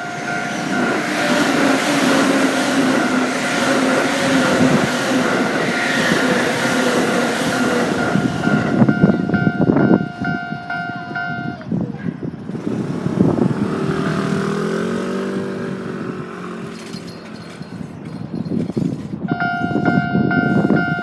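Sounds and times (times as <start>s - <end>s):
level crossing bell ringing: 5.4s - 11.6s
vehicle engine pulling away: 12.5s - 17.2s.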